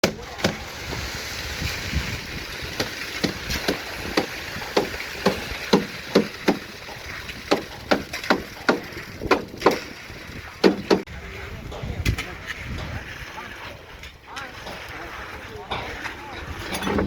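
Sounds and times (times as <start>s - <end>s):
sharp knocks: 2.8s - 6.7s, 7.5s - 9.9s, 10.6s - 11.0s.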